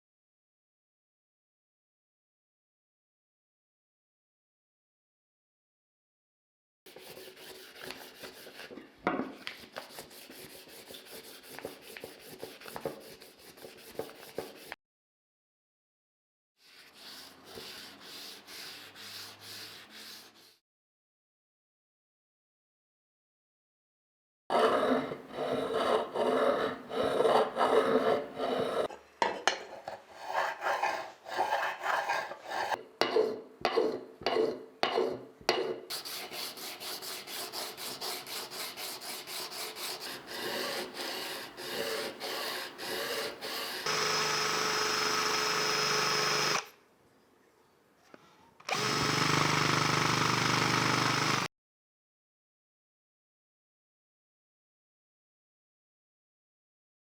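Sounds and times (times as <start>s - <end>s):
hand scraping a workpiece: 6.9s - 14.8s, 16.6s - 20.6s, 24.5s - 44.0s
power tool running: 43.0s - 46.7s, 48.7s - 51.5s.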